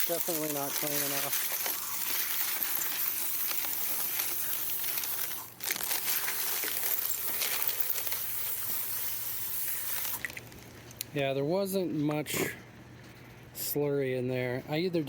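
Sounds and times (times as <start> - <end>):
water spraying onto rocks: 0.0 - 5.4.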